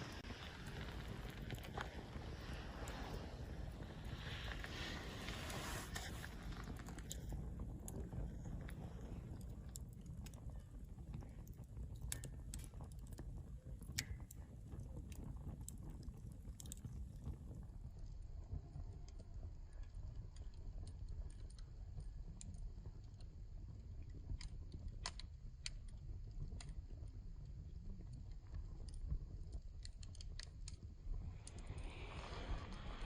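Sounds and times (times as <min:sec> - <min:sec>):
low rumble: 0:00.0 - 0:12.6, 0:31.1 - 0:33.0
campfire wood crackling: 0:00.0 - 0:33.0.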